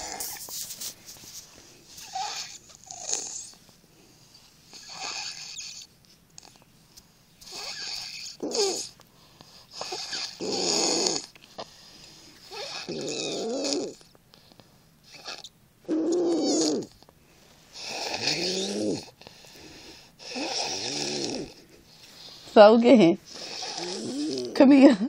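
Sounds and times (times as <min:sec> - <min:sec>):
child snoring: 0:00.0 - 0:00.4, 0:02.0 - 0:03.6, 0:04.7 - 0:06.5, 0:07.4 - 0:09.0, 0:09.6 - 0:11.7, 0:12.5 - 0:14.1, 0:15.1 - 0:17.0, 0:17.7 - 0:21.6, 0:23.3 - 0:24.7.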